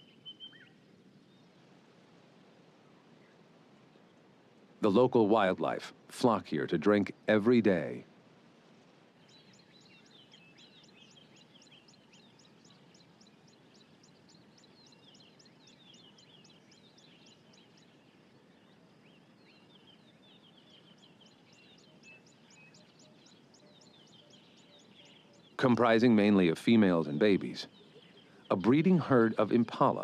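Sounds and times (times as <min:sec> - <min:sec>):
birds chirping: 0:00.0 - 0:01.5, 0:04.8 - 0:08.0, 0:09.2 - 0:30.0
soft bird twittering: 0:00.0 - 0:01.6, 0:09.2 - 0:30.0
background hiss: 0:00.0 - 0:30.0.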